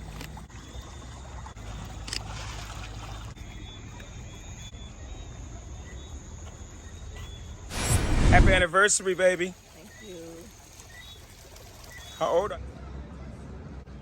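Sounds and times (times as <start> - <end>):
river water lapping: 0.0 - 3.5
low rumble: 7.7 - 8.7.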